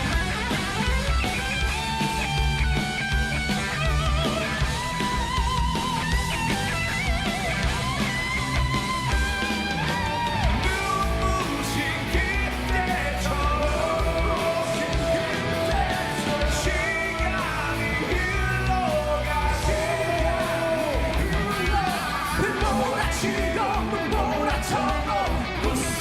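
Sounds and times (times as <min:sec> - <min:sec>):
bass guitar: 0:00.0 - 0:26.0
drums: 0:00.0 - 0:26.0
electric guitars: 0:00.0 - 0:26.0
person singing: 0:10.5 - 0:26.0.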